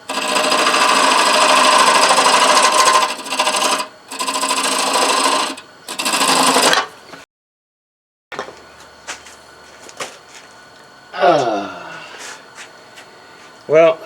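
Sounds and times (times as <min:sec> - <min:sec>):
lathe tool rasping wood: 0:00.0 - 0:06.9.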